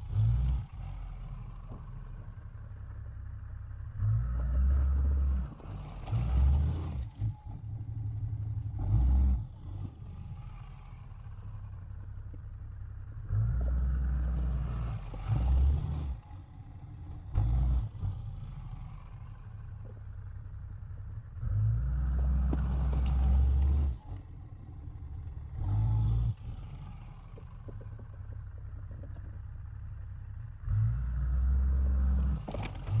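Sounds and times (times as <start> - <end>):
truck engine revving: 30.6 - 33.0.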